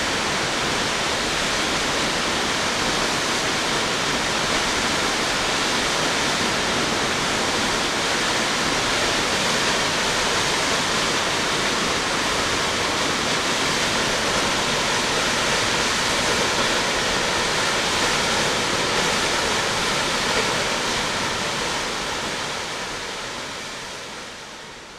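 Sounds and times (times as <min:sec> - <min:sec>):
waterfall roaring: 0:00.0 - 0:24.9.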